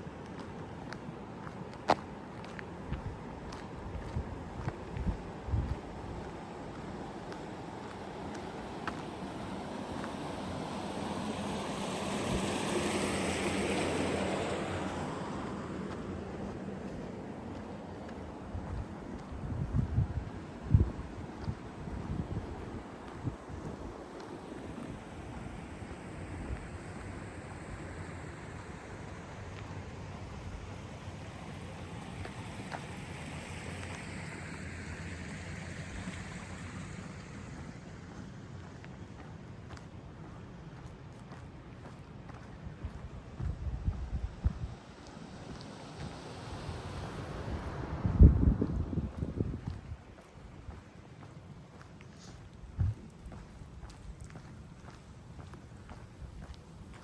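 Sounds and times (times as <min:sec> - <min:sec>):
tyres hissing on wet road: 0:03.6 - 0:19.4, 0:20.1 - 0:39.6, 0:44.8 - 0:49.5, 0:50.3 - 0:53.7.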